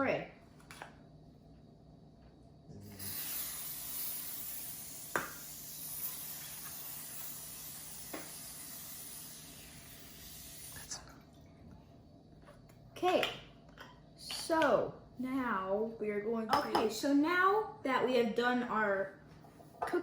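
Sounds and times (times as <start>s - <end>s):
aerosol spray hissing: 2.9s - 10.9s.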